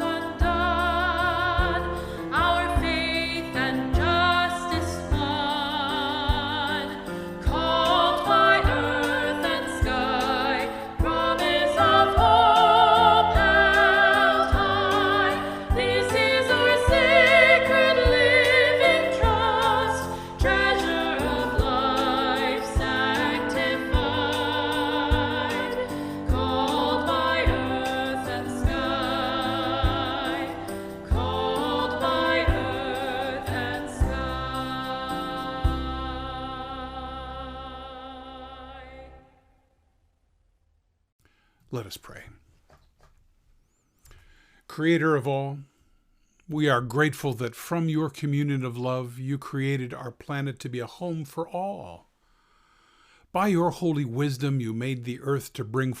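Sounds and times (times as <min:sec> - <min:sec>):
person singing with vibrato: 0:00.0 - 0:39.3.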